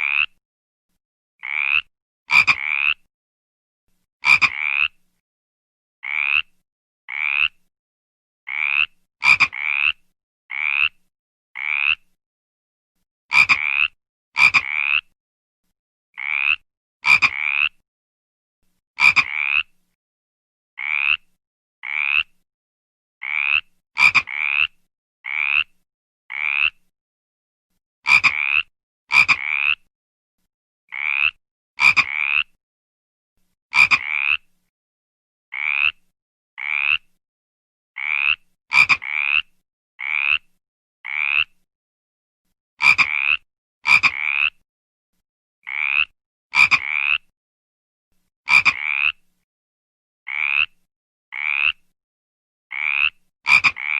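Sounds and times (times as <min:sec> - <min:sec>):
frog croaking: 0:00.0 - 0:00.4, 0:01.4 - 0:03.1, 0:04.2 - 0:05.0, 0:06.0 - 0:06.5, 0:07.1 - 0:07.6, 0:08.5 - 0:11.0, 0:11.6 - 0:12.0, 0:13.3 - 0:15.0, 0:16.2 - 0:17.8, 0:19.0 - 0:19.7, 0:20.8 - 0:22.3, 0:23.2 - 0:25.7, 0:26.3 - 0:26.8, 0:28.1 - 0:29.8, 0:30.9 - 0:32.5, 0:33.7 - 0:34.4, 0:35.5 - 0:36.0, 0:36.6 - 0:37.1, 0:38.0 - 0:40.5, 0:41.1 - 0:41.6, 0:42.8 - 0:44.6, 0:45.7 - 0:47.3, 0:48.5 - 0:49.2, 0:50.3 - 0:50.8, 0:51.4 - 0:51.8, 0:52.7 - 0:53.9.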